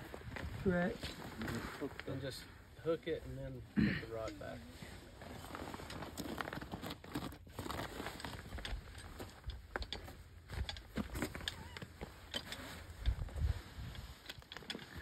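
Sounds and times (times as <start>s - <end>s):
rustling: 0.0s - 15.0s
metal clicks and scraping: 5.8s - 15.0s.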